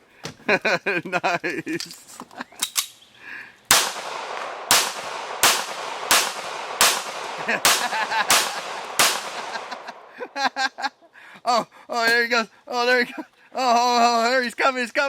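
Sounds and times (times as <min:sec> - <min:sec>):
gunshots with echo: 0:03.7 - 0:10.2.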